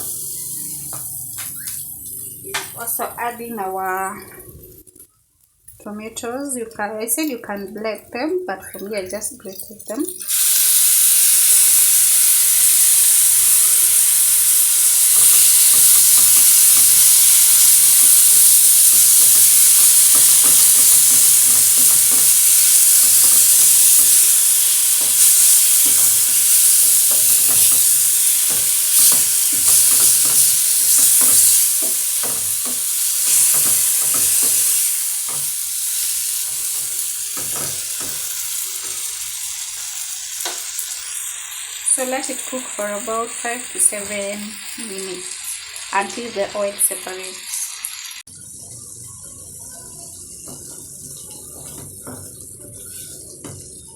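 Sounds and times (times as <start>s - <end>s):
tomatoes sizzling in hot oil: 0.0s - 4.0s, 6.3s - 53.9s
spoon stirring and scraping pan: 14.4s - 41.0s, 48.4s - 53.9s.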